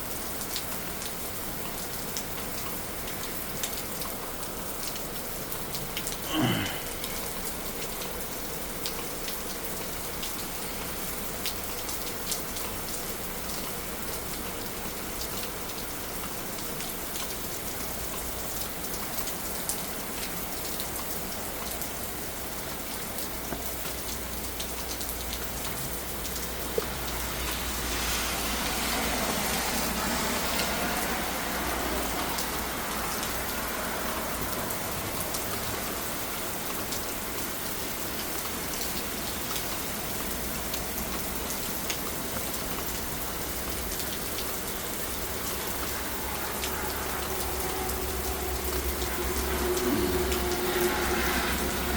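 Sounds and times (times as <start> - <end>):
heavy rain pattering: 0.0 - 51.9
falling-pitch sound: 45.9 - 51.9.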